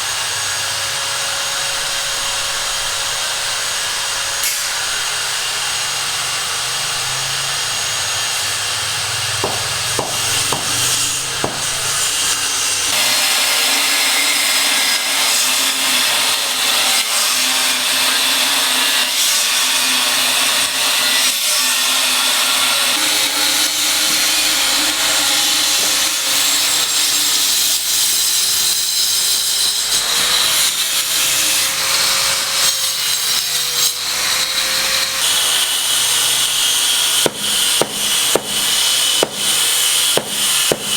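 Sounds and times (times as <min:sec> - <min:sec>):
power tool cutting: 0:00.0 - 0:40.9.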